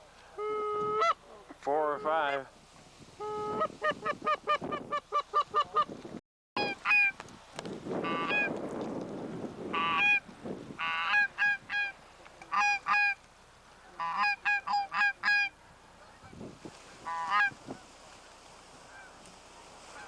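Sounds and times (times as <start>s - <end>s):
geese honking: 0.4s - 1.3s, 3.2s - 5.9s, 6.6s - 7.2s, 8.0s - 8.5s, 9.7s - 10.2s, 10.8s - 13.2s, 13.9s - 20.0s.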